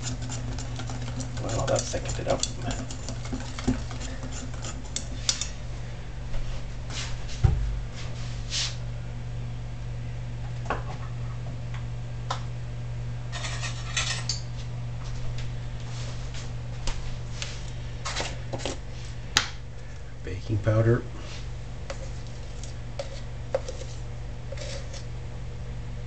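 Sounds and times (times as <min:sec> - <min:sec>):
utensils knocking against mixing bowl: 0:00.0 - 0:05.6
low hum from stove: 0:00.0 - 0:26.0.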